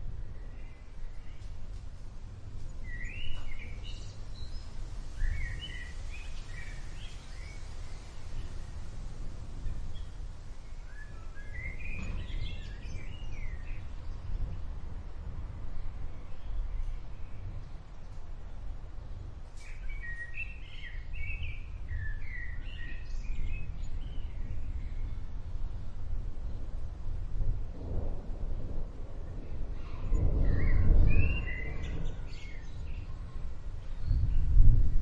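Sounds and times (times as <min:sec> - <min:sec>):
low rumble of thunder: 0:00.0 - 0:35.0
wind: 0:00.0 - 0:35.0
small birds chirping: 0:02.5 - 0:08.8, 0:09.5 - 0:14.6.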